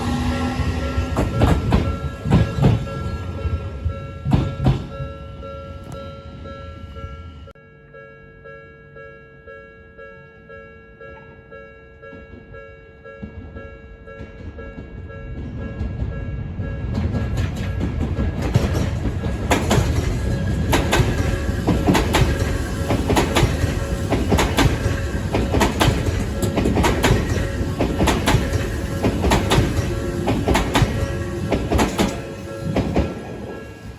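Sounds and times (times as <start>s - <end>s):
wheels clacking over rail joints: 0.0s - 5.2s, 13.2s - 33.9s
train passing: 0.0s - 7.6s, 12.1s - 33.9s
level crossing warning bell: 0.0s - 33.9s.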